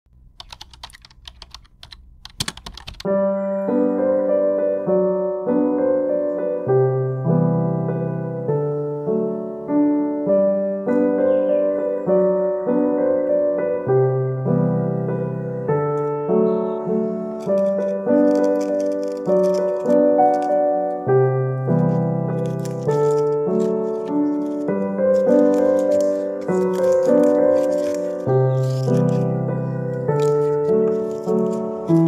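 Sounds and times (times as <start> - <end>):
sharp clicks: 0.4 - 3.1
piano music with slow chords: 0.4 - 32.0.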